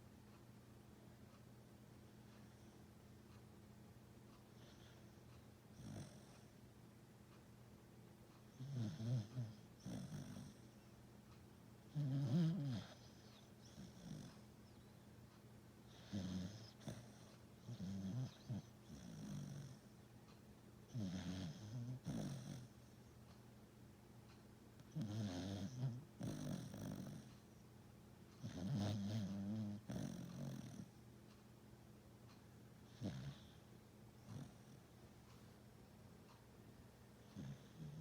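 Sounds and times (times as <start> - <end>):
pet snoring: 4.5 - 5.1, 5.7 - 6.6, 8.5 - 10.8, 11.9 - 14.5, 15.9 - 19.9, 20.9 - 22.9, 24.8 - 27.5, 28.4 - 31.0, 32.8 - 34.8, 37.2 - 38.0.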